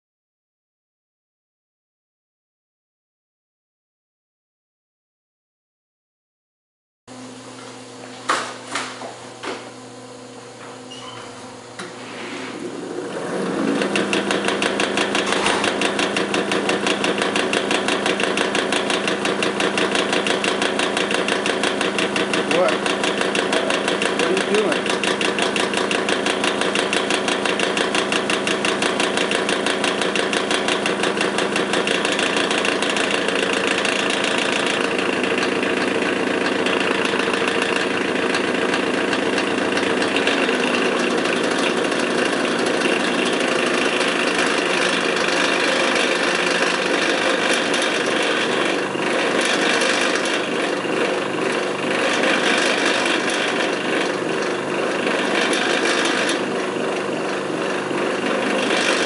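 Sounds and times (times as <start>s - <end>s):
electric fan motor running roughly: 7.1s - 59.0s
fast pulsing rattle: 13.1s - 59.0s.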